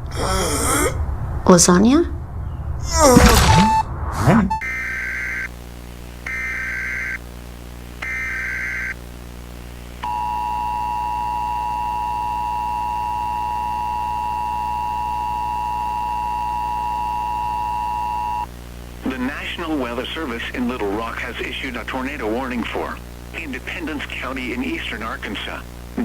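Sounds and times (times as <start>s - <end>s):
data burst tones: 3.2s - 5.5s, 6.3s - 7.2s, 8.0s - 9.0s
two-tone attention signal: 3.5s - 5.5s.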